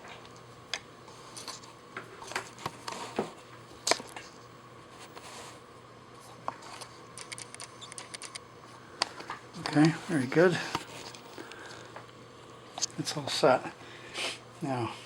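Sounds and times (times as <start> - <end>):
faint steady hum: 0.0 - 15.0
light clicks and handling noises: 9.0 - 12.2.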